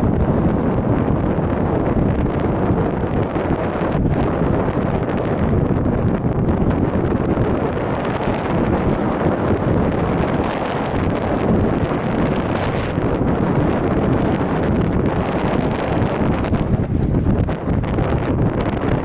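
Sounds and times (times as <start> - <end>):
wind buffeting microphone: 0.0 - 19.0.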